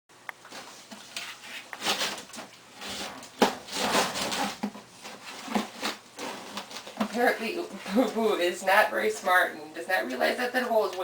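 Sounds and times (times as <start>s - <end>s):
litter box scraping and knocking: 1.0s - 8.0s.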